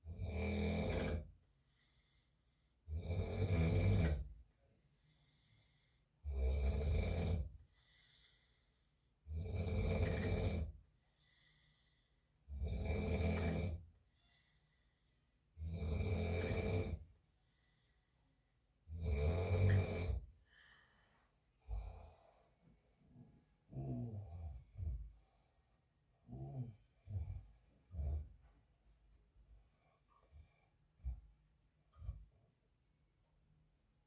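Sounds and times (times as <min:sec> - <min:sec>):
man snoring: 0:00.0 - 0:01.3, 0:02.9 - 0:04.3, 0:06.2 - 0:07.5, 0:09.3 - 0:10.8, 0:12.5 - 0:13.8, 0:15.6 - 0:17.1, 0:18.9 - 0:20.3, 0:23.7 - 0:25.1, 0:26.3 - 0:28.2.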